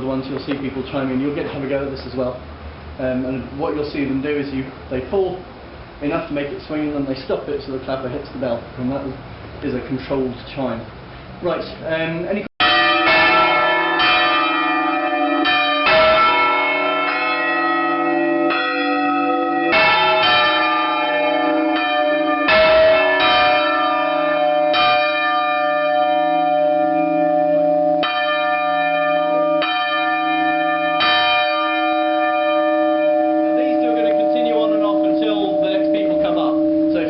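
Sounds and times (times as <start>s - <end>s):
church bells ringing: 12.6s - 37.0s.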